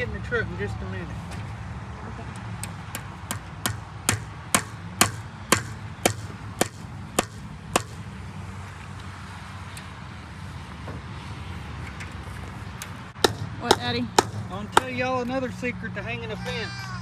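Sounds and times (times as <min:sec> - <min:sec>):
hammer driving staples into wood: 0:02.6 - 0:08.0.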